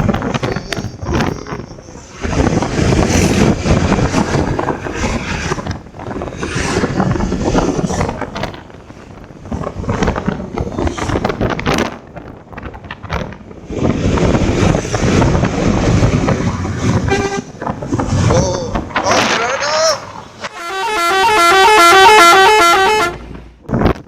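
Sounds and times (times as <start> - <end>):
low road rumble: 0.0 - 24.0
wind buffeting microphone: 0.0 - 24.0.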